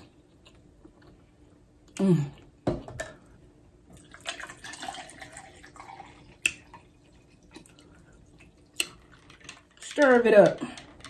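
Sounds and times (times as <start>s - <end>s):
liquid sloshing and dripping: 3.9s - 10.0s.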